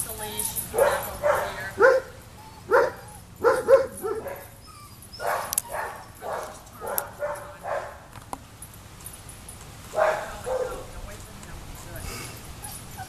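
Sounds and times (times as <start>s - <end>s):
dog barking: 0.7s - 4.5s, 5.2s - 8.1s, 9.9s - 10.9s.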